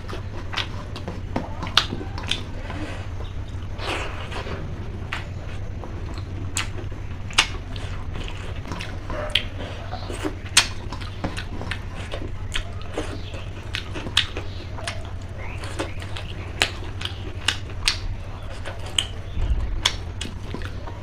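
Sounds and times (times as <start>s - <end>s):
low hum: 0.0s - 21.0s
person chewing: 0.0s - 21.0s
mouth clicks and smacks: 6.0s - 21.0s.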